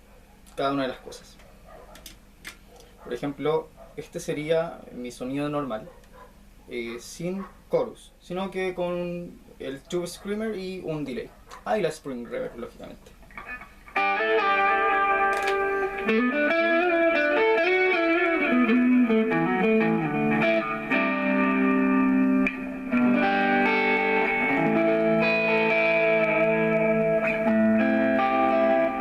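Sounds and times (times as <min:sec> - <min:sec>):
overdriven electric guitar: 0:13.2 - 0:29.0.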